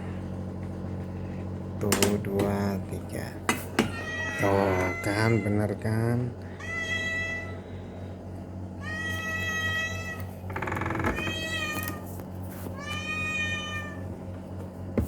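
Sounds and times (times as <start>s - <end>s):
cat meowing: 3.8s - 5.7s, 6.6s - 7.6s, 8.8s - 10.3s, 11.1s - 12.0s, 12.8s - 14.0s.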